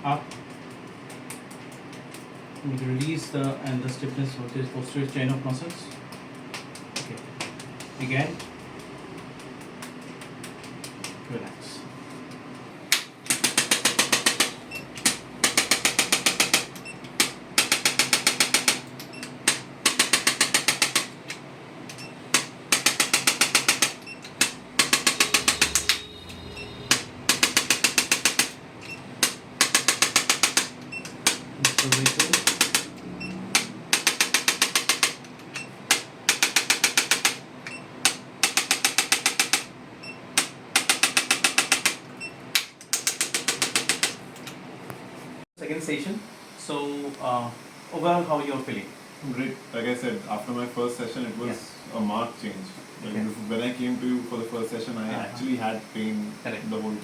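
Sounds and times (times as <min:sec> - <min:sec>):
rapid mechanical clicking: 0:00.3 - 0:11.2, 0:12.9 - 0:39.7, 0:40.3 - 0:44.6.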